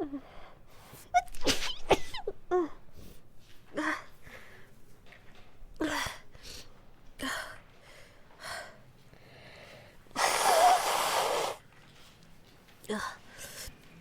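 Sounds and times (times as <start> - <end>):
woman sneezing: 10.2 - 11.6.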